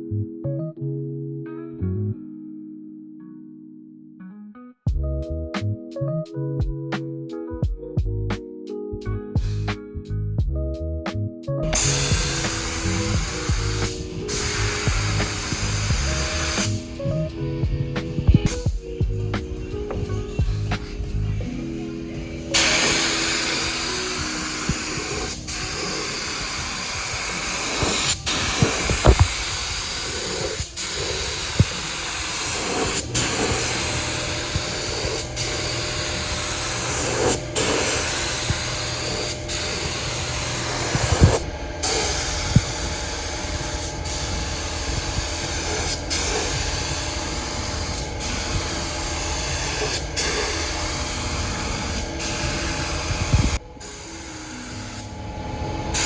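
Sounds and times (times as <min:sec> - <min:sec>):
low steady hum: 0:11.7 - 0:27.5
spray paint gun hissing: 0:11.8 - 0:17.1, 0:19.8 - 0:21.5, 0:22.5 - 0:55.1.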